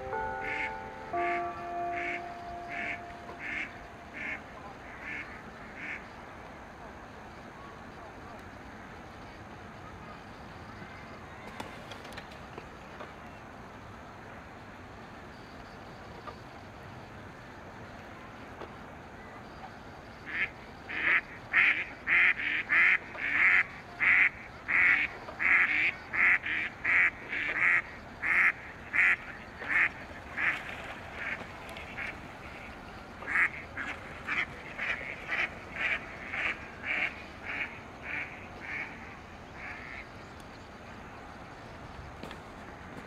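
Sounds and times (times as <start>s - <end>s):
ducks quacking: 0.2s - 6.1s, 20.3s - 40.0s.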